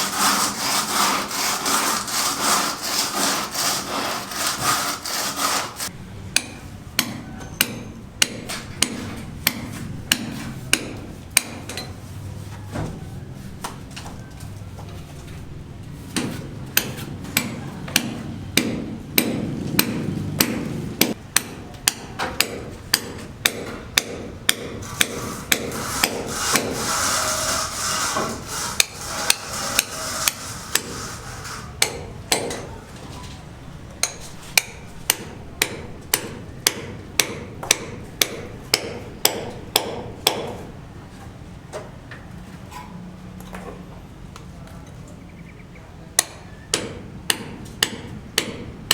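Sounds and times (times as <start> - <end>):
hand hammer striking: 0.2 - 11.9, 16.2 - 32.7, 34.0 - 40.6, 46.2 - 48.9.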